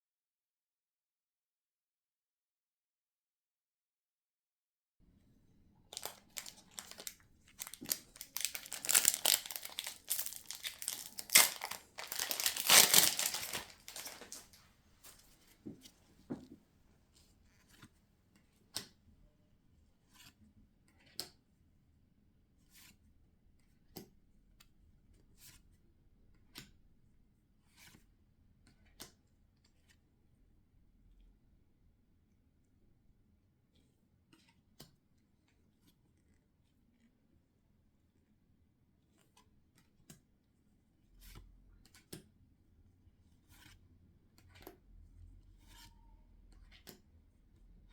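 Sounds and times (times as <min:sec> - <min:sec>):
cards ticking and tapping: 0:06.0 - 0:14.5
foil pack tearing and crinkling: 0:06.0 - 0:14.6.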